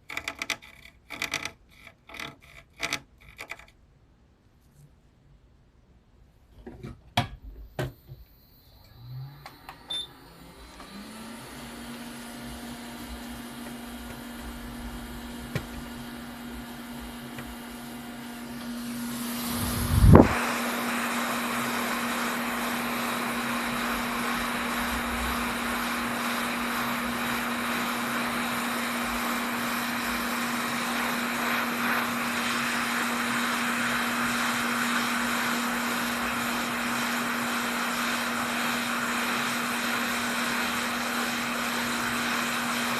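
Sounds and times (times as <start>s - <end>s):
electric motor humming: 8.8s - 42.9s
rushing air: 19.0s - 28.2s.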